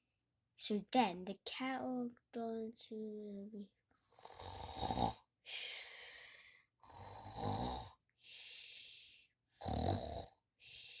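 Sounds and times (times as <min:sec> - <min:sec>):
person pretend snoring: 0:04.0 - 0:05.2, 0:06.8 - 0:08.0, 0:09.6 - 0:10.4.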